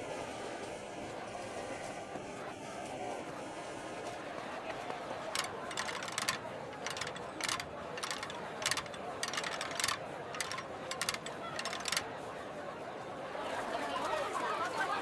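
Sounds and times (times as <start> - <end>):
mechanical clicks and rattles: 5.2 - 12.1.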